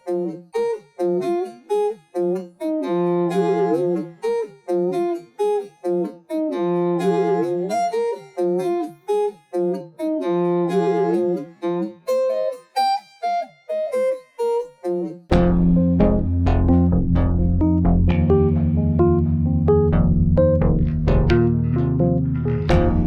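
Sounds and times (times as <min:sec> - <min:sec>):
instrumental melody of short notes: 0:15.3 - 0:23.0.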